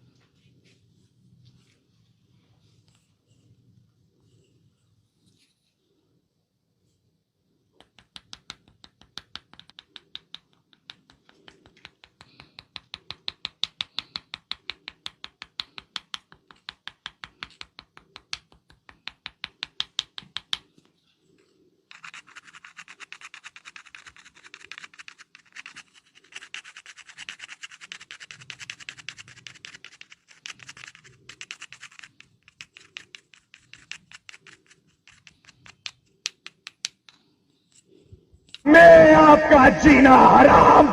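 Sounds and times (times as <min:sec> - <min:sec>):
hands tapping on head: 0:07.8 - 0:20.6
scratching and rubbing hair: 0:21.3 - 0:36.7.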